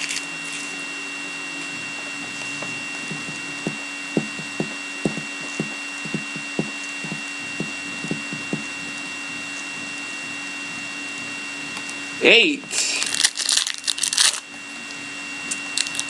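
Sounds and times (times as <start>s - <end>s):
steady electrical hum: 0.0s - 16.0s
light taps: 2.6s - 8.7s.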